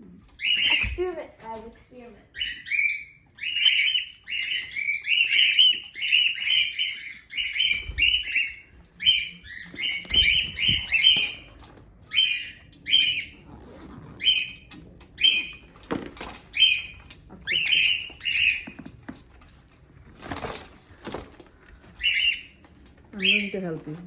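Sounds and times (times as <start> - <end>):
cockatiel chirping: 0.4 - 1.2, 2.3 - 13.5, 14.1 - 18.9, 21.9 - 22.6, 23.2 - 23.8.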